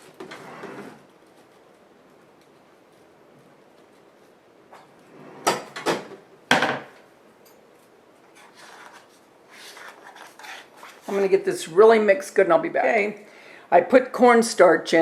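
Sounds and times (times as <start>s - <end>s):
scraping in a bowl: 8.4s - 11.3s.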